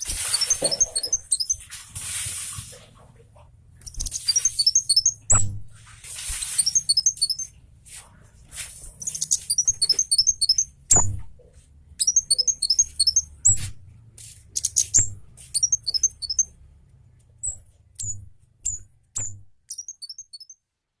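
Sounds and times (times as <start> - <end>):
bird twittering chirps: 0.0 - 1.6, 3.8 - 5.4, 6.4 - 7.5, 9.0 - 11.0, 12.0 - 13.7, 14.5 - 16.5, 17.4 - 20.6.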